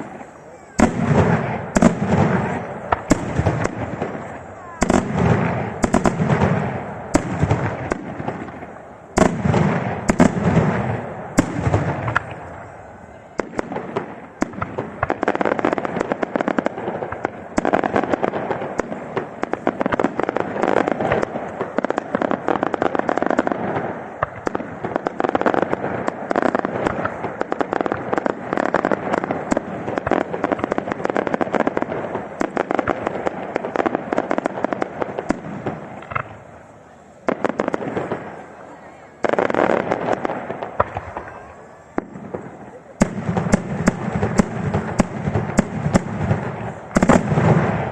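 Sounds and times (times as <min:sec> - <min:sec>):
firework shell booms: 0:00.0 - 0:12.7, 0:39.3 - 0:47.9
rapid firecracker cracks: 0:00.0 - 0:47.9.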